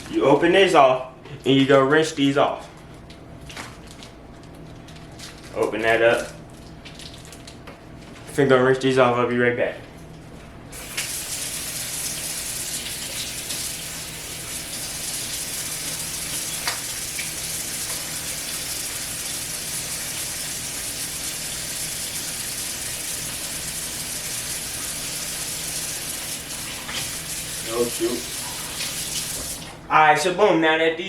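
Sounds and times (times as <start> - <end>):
tap running into sink: 15.8 - 18.1, 28.3 - 29.7.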